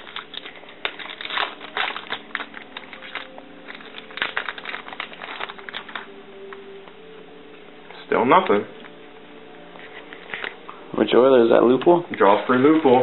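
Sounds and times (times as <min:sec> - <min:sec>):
cards flipped by hand: 0:09.8 - 0:10.8.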